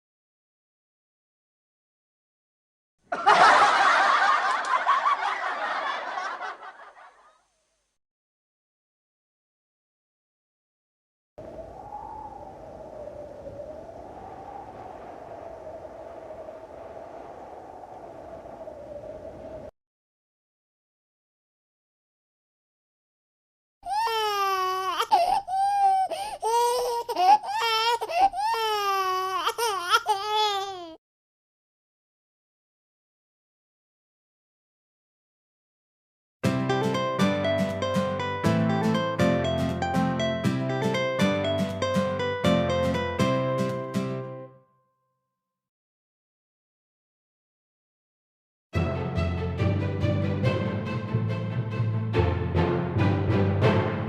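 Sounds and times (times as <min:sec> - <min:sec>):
audience laughing: 0:03.1 - 0:07.4
baby crying: 0:23.8 - 0:31.0.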